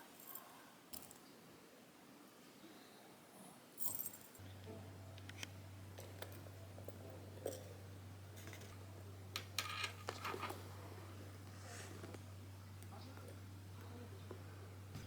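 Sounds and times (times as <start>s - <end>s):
steady low hum: 3.8s - 15.0s
small objects clicking and tapping: 9.4s - 10.6s.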